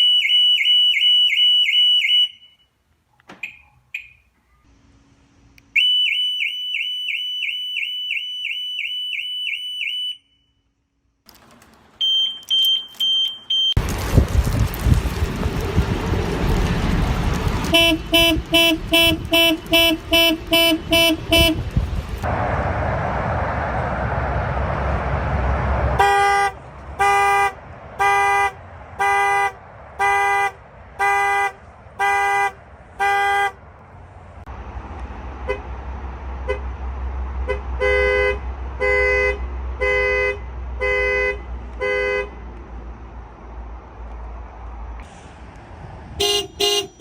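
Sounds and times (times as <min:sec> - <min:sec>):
loud rushing noise: 0:13.8 - 0:27.0
low rumble: 0:13.8 - 0:27.0
car horn honking: 0:17.6 - 0:21.7, 0:26.0 - 0:33.6, 0:36.4 - 0:36.7, 0:37.4 - 0:42.4, 0:46.2 - 0:47.0.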